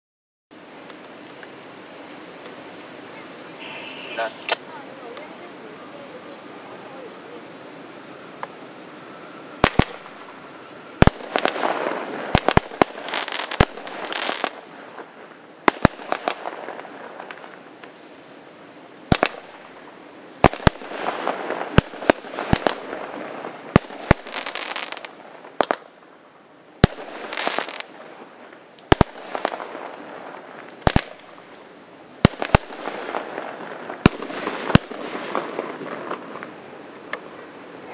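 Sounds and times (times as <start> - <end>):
firework hiss: 3.5 - 37.9
firework bangs: 9.6 - 18.0, 19.1 - 26.0, 26.8 - 31.6, 32.2 - 37.4.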